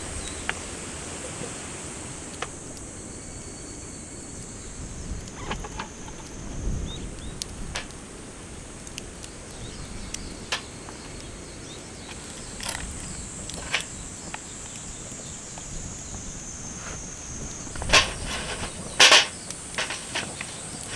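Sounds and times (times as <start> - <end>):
insect chorus: 0.0 - 20.9
low wind rumble: 0.0 - 20.9
sharp clicks and snaps: 5.2 - 15.5.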